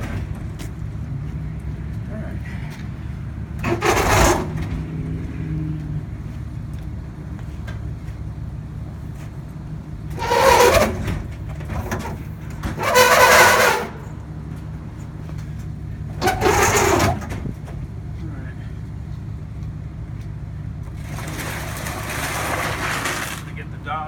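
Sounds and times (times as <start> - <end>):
low engine-like hum: 0.0 - 24.0.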